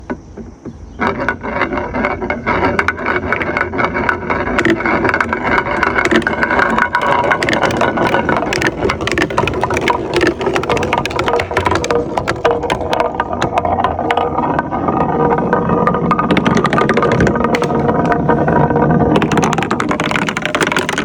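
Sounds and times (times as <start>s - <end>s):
marbles rolling and clattering: 1.0s - 21.0s.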